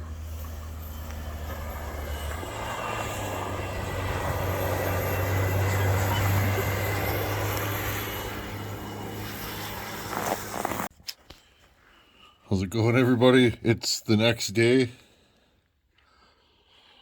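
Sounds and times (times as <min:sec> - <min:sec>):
engine humming: 0:00.0 - 0:10.9.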